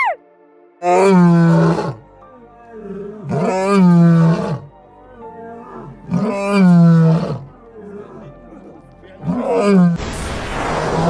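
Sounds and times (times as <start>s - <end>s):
faint background music: 0.0s - 11.0s
large animal roaring: 0.8s - 4.8s, 5.4s - 10.1s.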